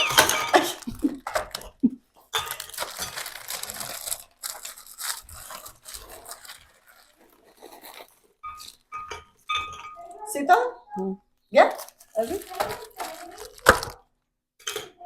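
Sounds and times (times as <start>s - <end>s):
packets crinkling and tearing: 0.0s - 8.9s, 11.7s - 14.1s
cookies rustling: 0.0s - 10.1s, 11.6s - 14.2s.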